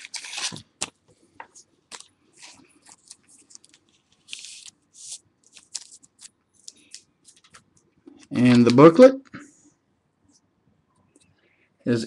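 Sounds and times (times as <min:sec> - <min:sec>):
card packs crinkling and rustling: 0:00.0 - 0:07.6.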